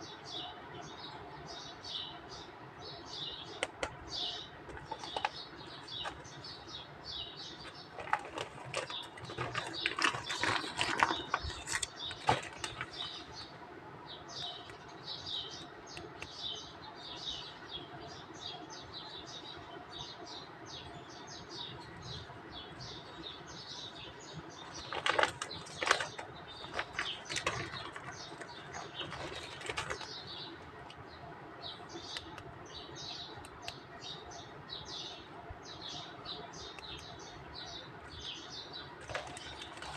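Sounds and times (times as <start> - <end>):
small birds chirping: 0.0 - 39.9
rustling with sharp clicks: 3.5 - 13.6, 23.0 - 31.0, 39.0 - 39.9.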